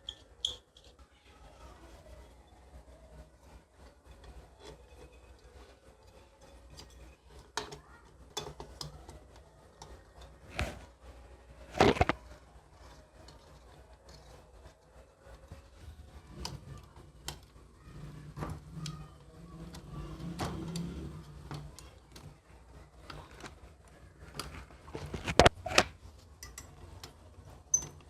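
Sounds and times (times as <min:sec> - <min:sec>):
clicks and taps on metal parts: 0:25.2 - 0:28.0.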